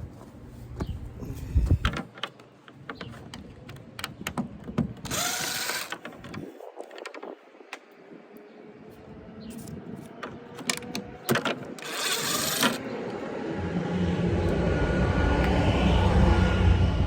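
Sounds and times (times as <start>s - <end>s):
low engine rumble: 11.9s - 17.0s.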